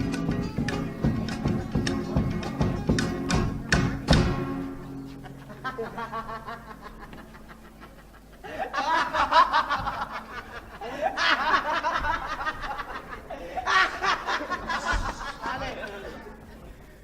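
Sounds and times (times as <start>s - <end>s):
group of people laughing: 5.0s - 17.0s.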